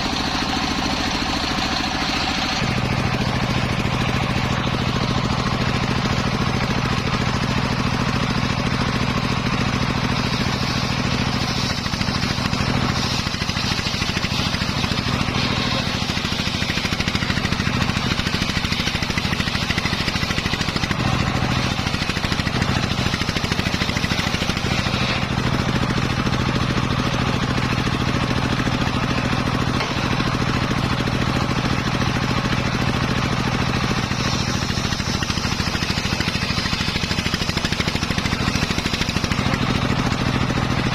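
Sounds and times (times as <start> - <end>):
circular saw cutting wood: 0.0 - 40.9
low engine note: 0.0 - 40.9.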